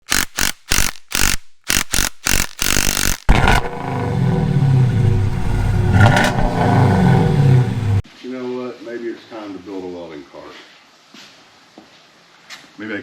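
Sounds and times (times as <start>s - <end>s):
engine running: 3.3s - 8.0s.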